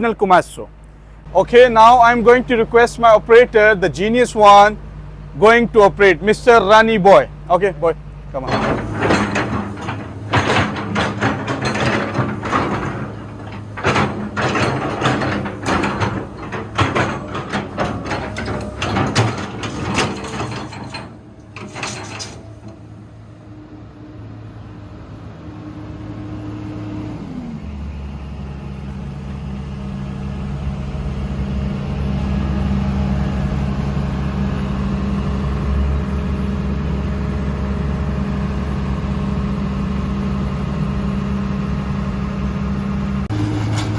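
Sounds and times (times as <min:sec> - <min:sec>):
excavator diesel engine drone: 0:00.0 - 0:43.9
metallic knocks and clatters: 0:08.4 - 0:22.8.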